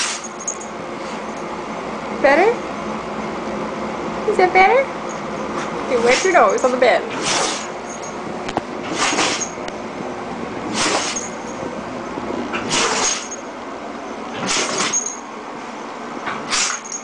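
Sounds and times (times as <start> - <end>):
dog sneezing: 0.0 - 0.2, 7.1 - 7.8, 8.9 - 9.5, 10.7 - 11.3, 12.6 - 13.3, 14.4 - 15.0, 16.5 - 16.8.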